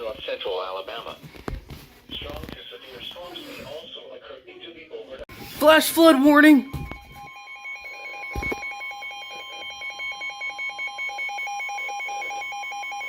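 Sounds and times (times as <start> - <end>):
steady high alert tone: 5.6 - 11.2.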